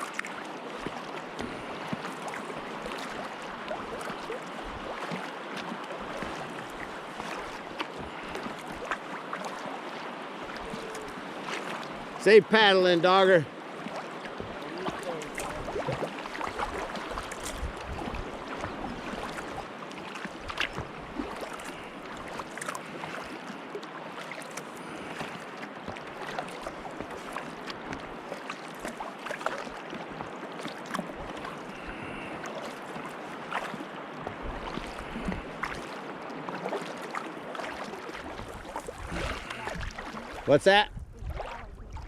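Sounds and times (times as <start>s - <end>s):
paddle splashes and drips: 0.0s - 42.0s
water lapping around kayak: 0.0s - 42.0s.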